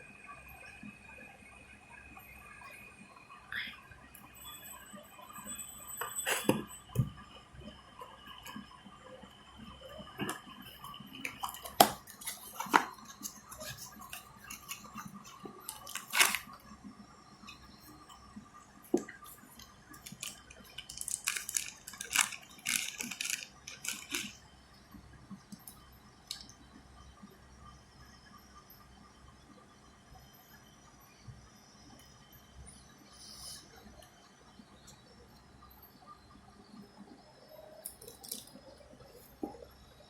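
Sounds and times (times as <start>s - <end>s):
plastic items clicking and tapping: 10.2s - 16.6s, 18.9s - 24.4s.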